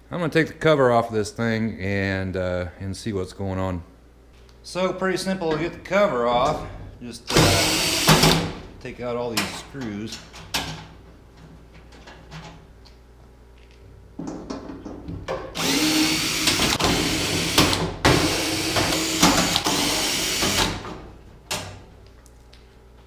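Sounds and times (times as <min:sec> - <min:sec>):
power drill backing out screws: 0:15.6 - 0:20.8.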